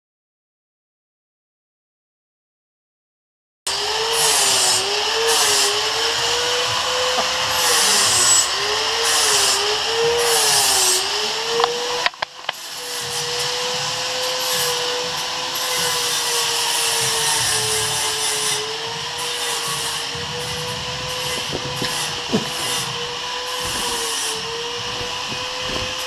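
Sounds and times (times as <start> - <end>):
electric power tool running: 3.7 - 26.0
tool clicks: 11.5 - 12.6.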